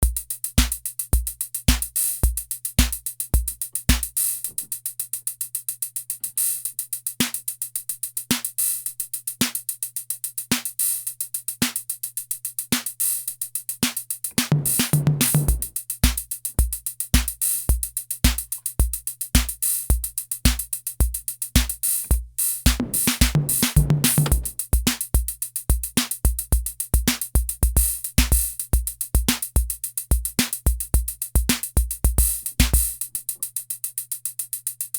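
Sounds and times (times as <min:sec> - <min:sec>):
drum machine pattern: 0:00.0 - 0:04.3, 0:13.8 - 0:33.4.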